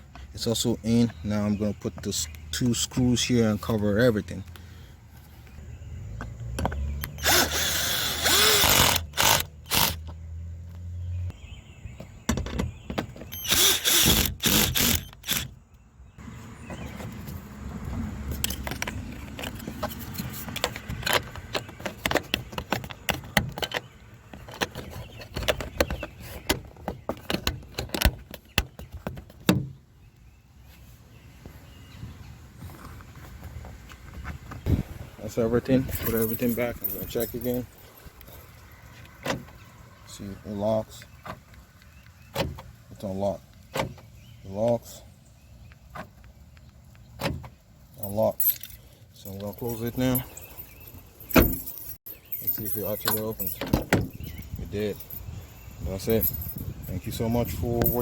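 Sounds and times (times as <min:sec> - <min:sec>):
screws being driven: 0:07.0 - 0:10.1, 0:13.3 - 0:15.6.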